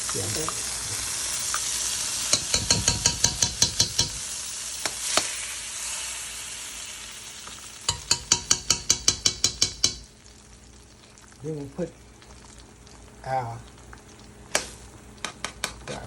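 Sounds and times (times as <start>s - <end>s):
butter sizzling in frying pan: 0.0s - 16.0s
utensil knocking against pan: 2.3s - 4.2s, 7.9s - 10.1s.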